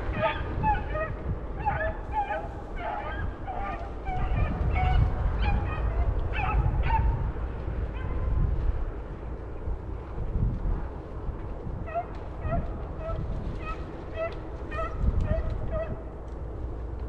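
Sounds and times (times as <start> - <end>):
hounds baying: 0.0 - 7.2, 7.9 - 8.3, 11.8 - 16.1
steady low rumble: 0.0 - 17.0.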